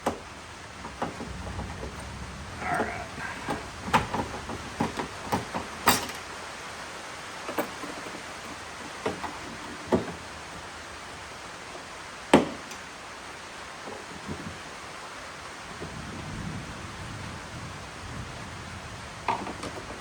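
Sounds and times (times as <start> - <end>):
clicks and knocks on lock: 3.5 - 6.4.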